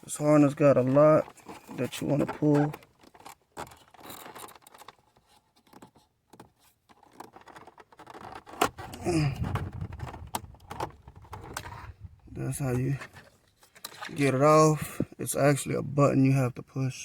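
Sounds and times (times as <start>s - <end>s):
person grunting: 9.0s - 9.6s.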